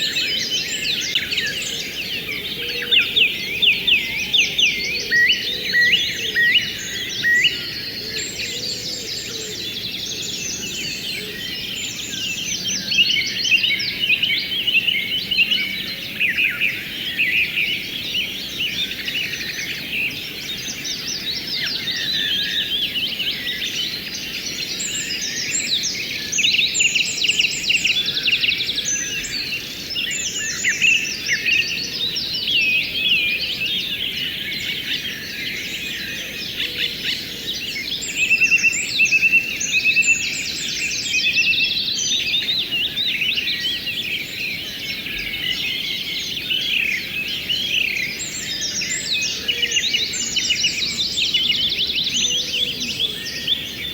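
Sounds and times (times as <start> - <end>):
small birds chirping and trilling: 0.0 - 53.9.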